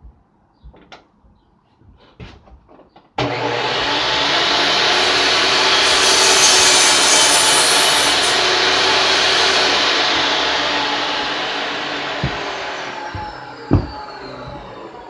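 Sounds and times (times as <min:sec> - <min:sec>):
power saw cutting wood: 0:03.2 - 0:15.0.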